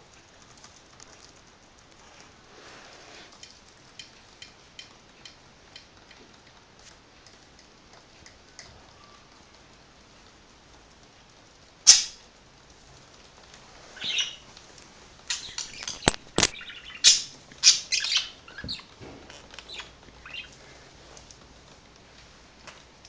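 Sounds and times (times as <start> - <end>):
budgerigars chirping: 11.9 - 12.2, 14.0 - 14.4, 15.3 - 18.9, 19.7 - 20.5.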